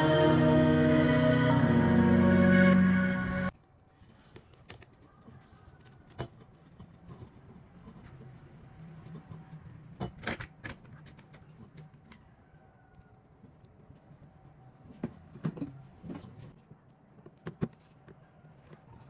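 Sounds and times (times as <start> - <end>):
low steady hum: 0.0 - 3.5.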